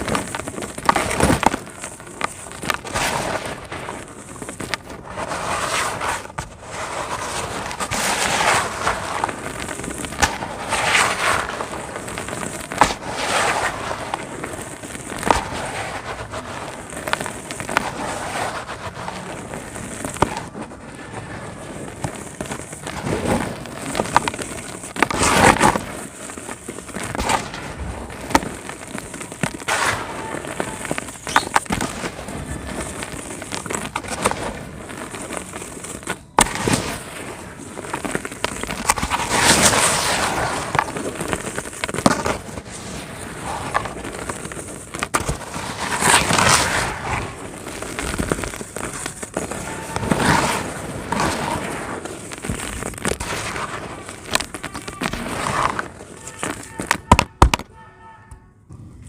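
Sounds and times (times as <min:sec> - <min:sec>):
dry cement crumbling and crunching: 0:00.0 - 0:57.8.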